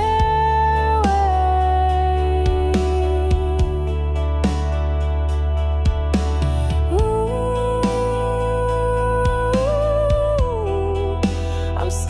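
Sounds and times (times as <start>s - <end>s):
soft kick drum beats: 0.0s - 1.3s, 2.5s - 4.8s, 5.9s - 8.3s
steady bass: 0.0s - 12.0s.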